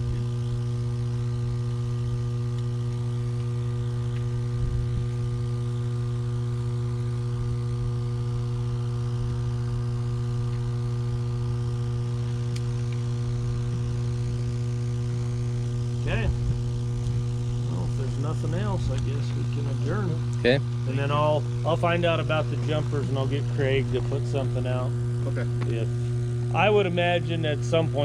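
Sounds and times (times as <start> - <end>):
transformer electrical hum: 0.0 - 28.0.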